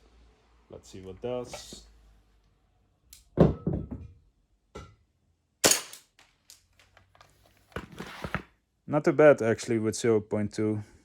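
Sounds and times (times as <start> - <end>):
airsoft pistol shots: 5.6 - 6.1.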